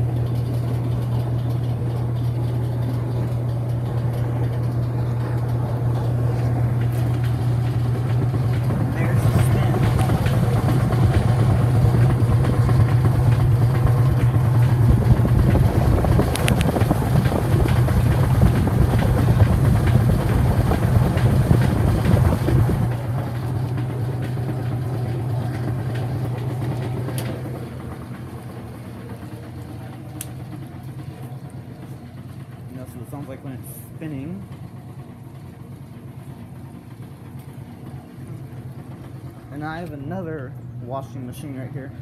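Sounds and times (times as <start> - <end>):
washing machine running: 0.0 - 42.0.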